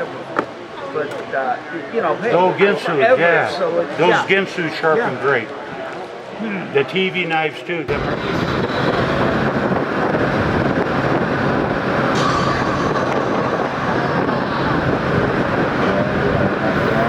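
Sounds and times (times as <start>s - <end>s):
vehicle road noise: 7.9s - 17.0s.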